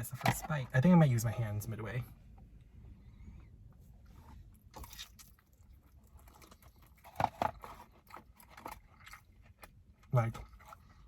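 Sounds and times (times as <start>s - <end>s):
chewing with wet mouth clicks: 4.7s - 11.0s.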